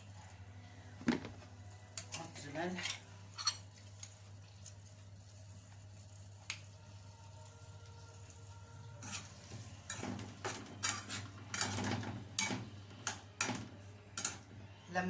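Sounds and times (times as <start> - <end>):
utensils and dishes clattering: 2.0 - 3.7, 9.0 - 14.5.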